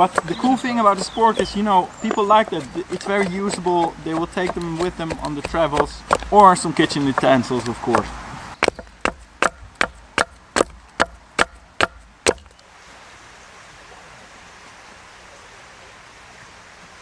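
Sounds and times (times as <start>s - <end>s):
hand tool chopping wood: 0.0s - 12.5s
faint hiss: 12.5s - 17.0s.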